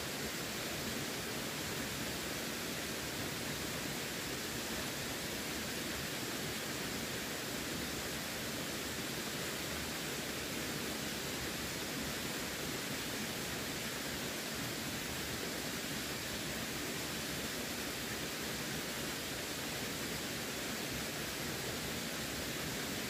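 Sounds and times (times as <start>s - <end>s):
running water rushing: 0.0s - 23.0s.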